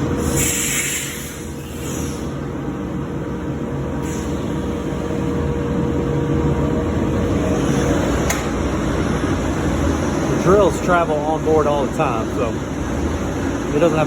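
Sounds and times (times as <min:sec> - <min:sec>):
cnc machine rumbling: 0:00.0 - 0:14.0.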